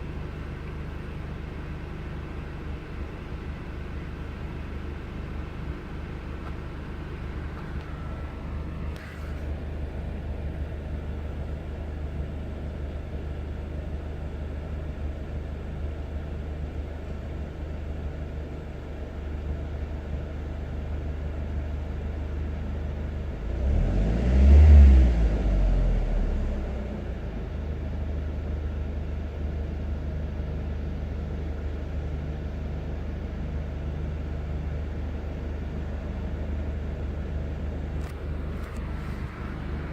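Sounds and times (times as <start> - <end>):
car engine idling and revving: 0.0 - 39.9.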